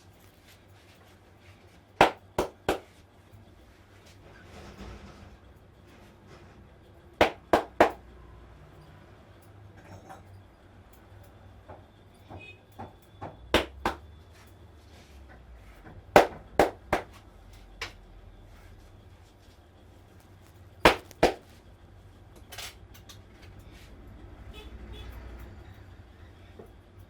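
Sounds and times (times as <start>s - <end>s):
hand slaps and claps on head: 2.0s - 2.9s, 13.6s - 14.0s.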